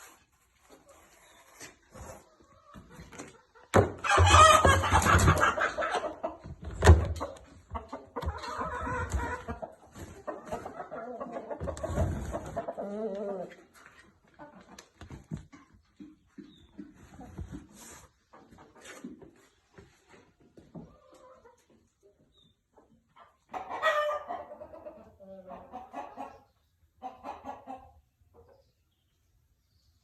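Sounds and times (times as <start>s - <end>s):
chickens squawking and clucking: 0.2s - 15.2s, 16.4s - 19.5s, 20.1s - 28.8s.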